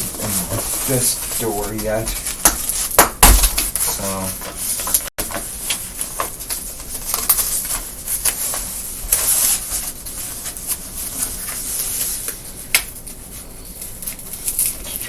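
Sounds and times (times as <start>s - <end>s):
cardboard scraping: 0.0s - 2.9s.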